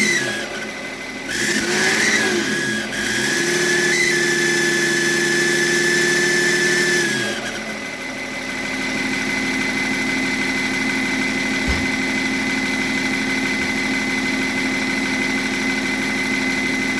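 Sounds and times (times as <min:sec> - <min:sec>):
diesel engine idling: 0:07.8 - 0:15.6.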